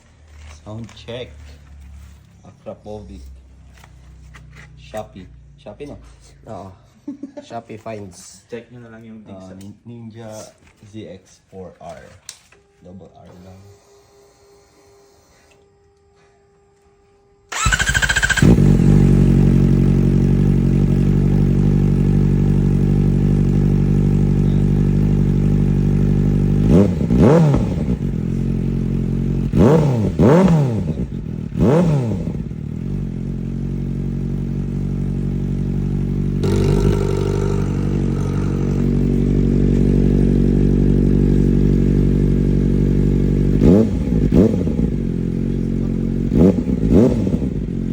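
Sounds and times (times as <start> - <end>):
motorcycle engine idling and revving: 0.0 - 6.5, 17.5 - 47.9.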